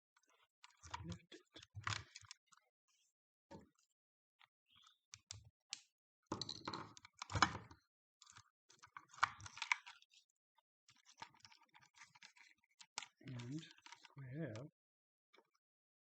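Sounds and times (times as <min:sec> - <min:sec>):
battery parts clicking and clattering: 0:06.3 - 0:07.6.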